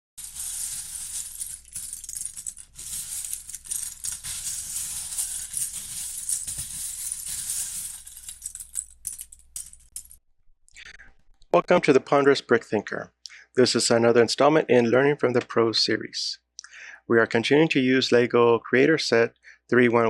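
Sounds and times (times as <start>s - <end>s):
plastic bricks rattling: 0.2s - 10.2s.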